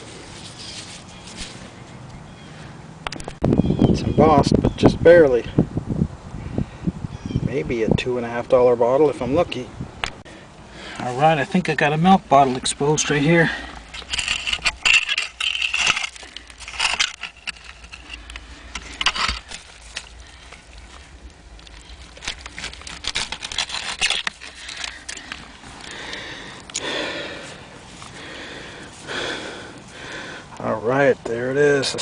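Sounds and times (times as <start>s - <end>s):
soft rustling: 0.0s - 1.9s
scraping dirt with clinks: 0.0s - 2.2s, 10.8s - 32.0s.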